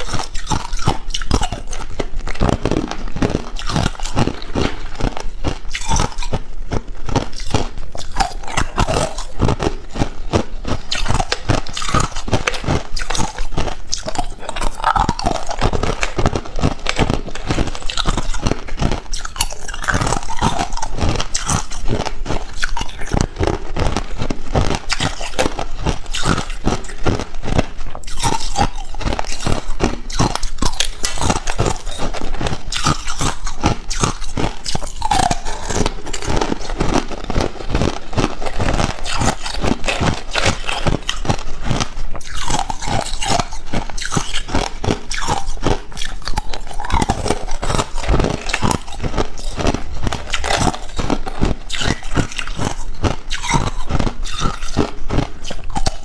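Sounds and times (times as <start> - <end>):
person crunching ice cubes: 0.0 - 56.0.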